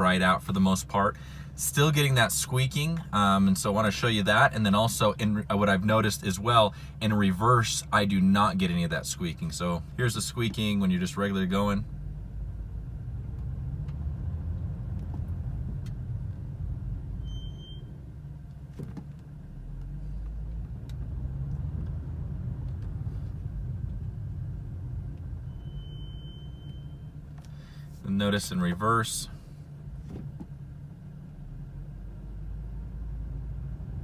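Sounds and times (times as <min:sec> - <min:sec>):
low rumble of car rolling: 0:00.0 - 0:34.0
car brakes squealing: 0:17.1 - 0:18.0, 0:25.3 - 0:27.9.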